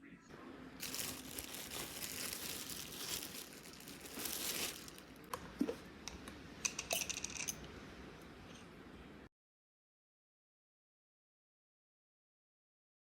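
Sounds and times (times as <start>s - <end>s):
small hard objects clinking: 0.8s - 5.1s
rustling crinkling: 0.8s - 5.3s.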